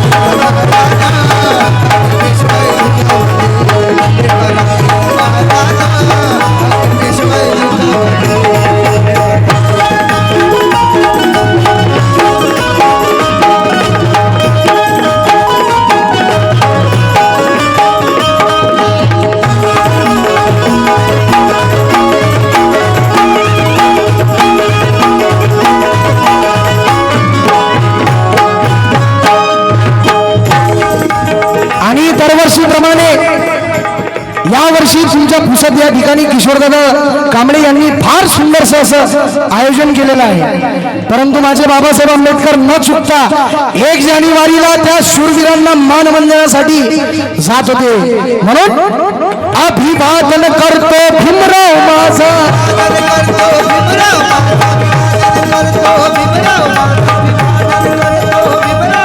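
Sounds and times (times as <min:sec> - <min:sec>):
repeating instrumental melody: 0:00.0 - 0:37.8, 0:46.9 - 0:59.0
hand drums beating: 0:00.0 - 0:59.0.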